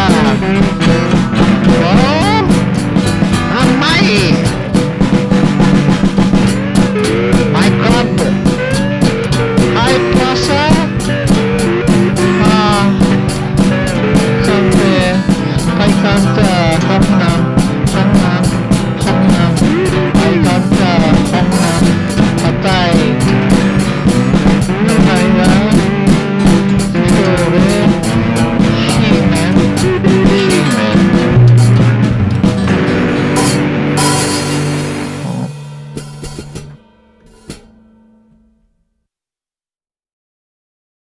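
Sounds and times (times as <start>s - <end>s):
electric guitar: 0.0s - 36.8s
low bass line: 0.0s - 36.8s
drum kit beat: 0.0s - 37.7s.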